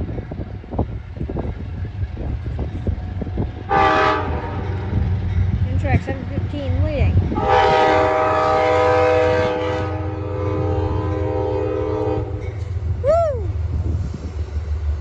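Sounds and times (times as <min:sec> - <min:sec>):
rumble of passing train: 0:00.0 - 0:15.0
train air horn blast: 0:03.7 - 0:04.7, 0:07.4 - 0:12.5.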